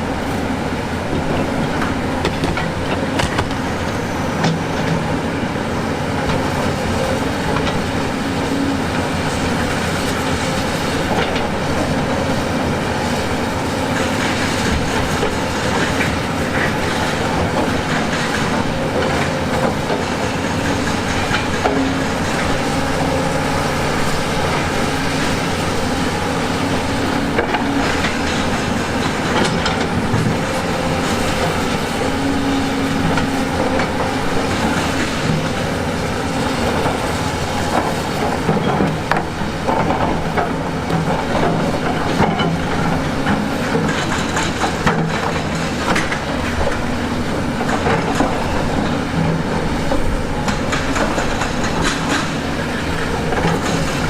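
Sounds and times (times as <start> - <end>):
diesel excavator engine running: 0.0 - 54.0
clanks and rattles: 47.6 - 54.0.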